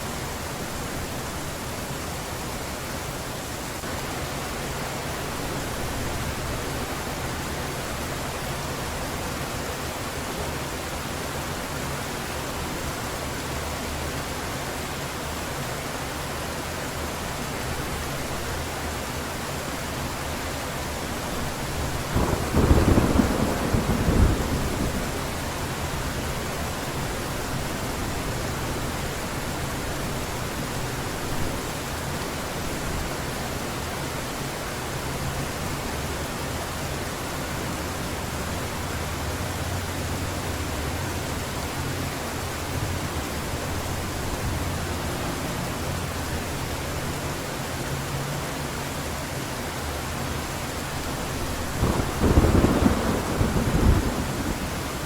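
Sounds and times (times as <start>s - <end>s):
heavy rain pouring: 0.0s - 55.0s
thunderclap: 22.2s - 25.4s, 51.7s - 55.0s.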